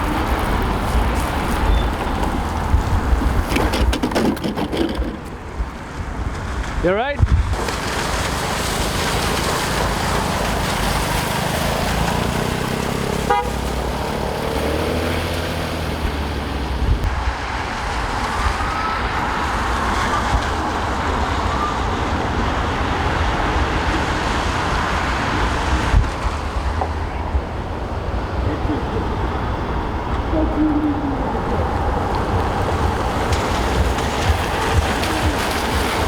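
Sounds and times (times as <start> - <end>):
street traffic: 0.0 - 36.0
wind buffeting microphone: 0.0 - 36.0
vehicle engine passing: 7.6 - 36.0.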